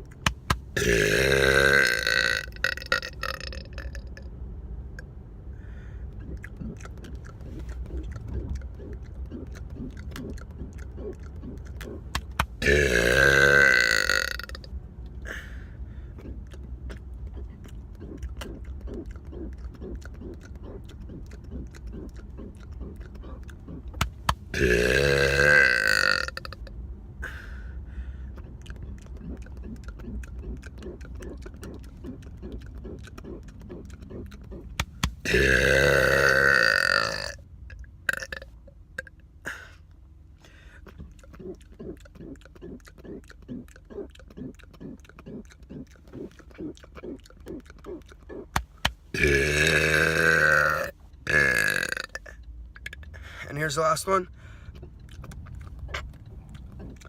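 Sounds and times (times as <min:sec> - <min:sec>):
faint mouth sounds: 0:00.0 - 0:05.2, 0:05.8 - 0:27.6, 0:28.3 - 0:57.0
low steady hum: 0:00.0 - 0:57.0
man burping: 0:00.8 - 0:04.2, 0:12.6 - 0:14.7, 0:24.5 - 0:26.6, 0:35.2 - 0:37.4, 0:49.1 - 0:52.4.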